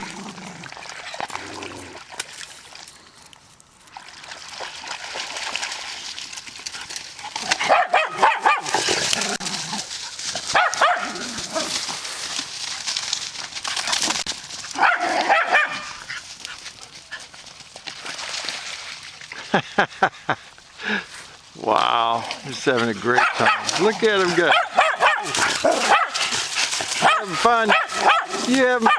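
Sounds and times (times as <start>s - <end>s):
dogs barking and yipping: 7.2s - 17.3s, 22.5s - 28.9s.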